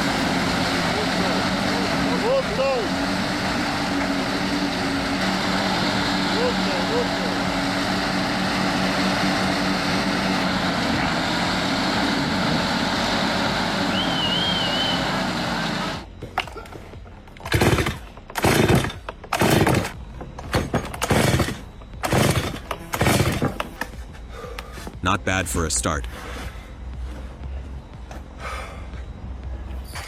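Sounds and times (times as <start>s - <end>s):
heavy engine running: 0.0s - 30.0s
loud bursts: 17.5s - 23.5s.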